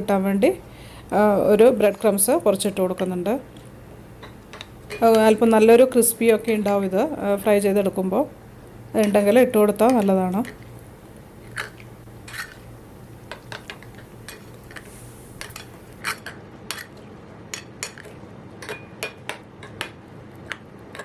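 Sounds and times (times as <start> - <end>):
spoon scraping mixing bowl: 11.4 - 12.7.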